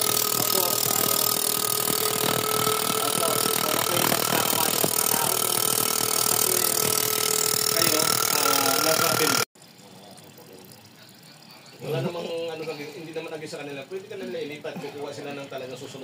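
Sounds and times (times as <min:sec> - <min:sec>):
car engine misfiring: 0:00.0 - 0:09.5.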